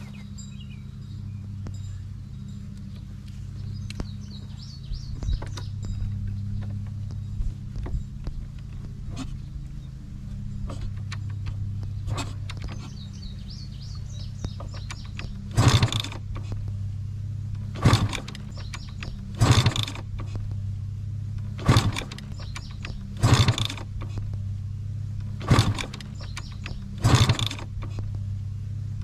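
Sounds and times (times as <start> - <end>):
steady low hum: 0.0 - 29.0
power tool rattling bursts: 14.5 - 16.5, 17.6 - 20.4, 21.4 - 24.2, 25.3 - 28.1.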